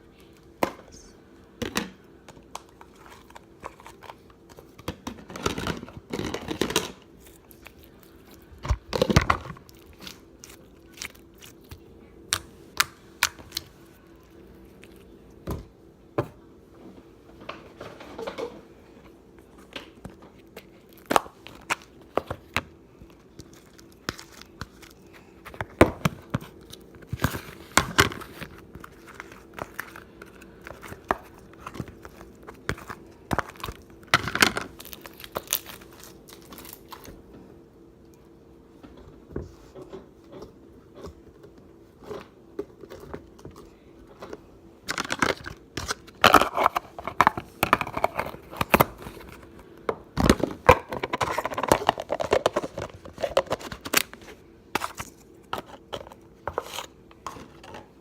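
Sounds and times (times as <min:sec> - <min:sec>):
slime squishing and squelching: 0:02.6 - 0:15.2, 0:20.4 - 0:37.2.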